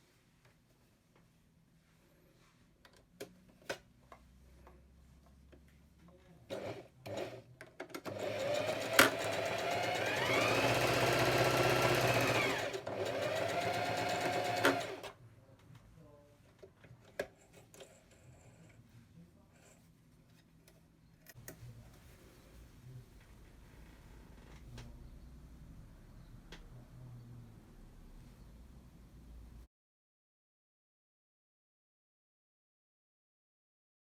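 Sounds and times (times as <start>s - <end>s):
electric sewing machine running: 6.5s - 7.4s, 8.0s - 15.1s.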